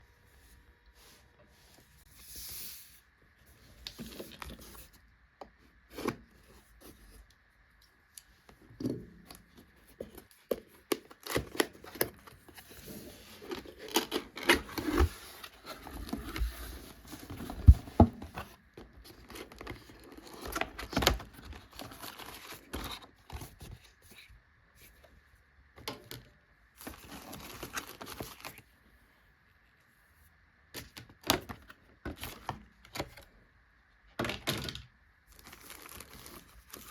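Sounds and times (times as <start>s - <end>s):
packaging tearing and crinkling: 35.3s - 36.9s.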